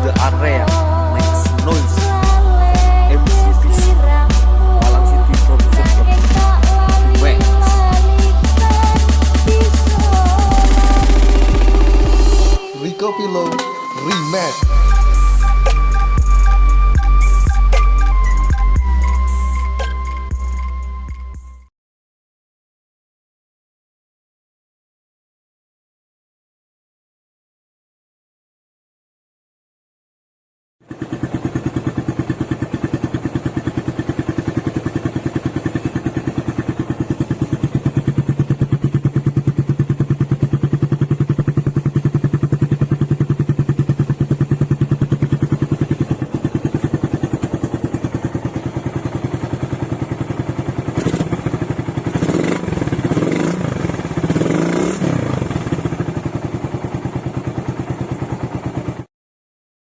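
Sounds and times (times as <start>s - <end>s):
motorcycle engine idling: 0.0s - 12.7s, 13.4s - 21.6s, 30.8s - 59.1s
motorcycle throttle blips: 30.8s - 59.1s.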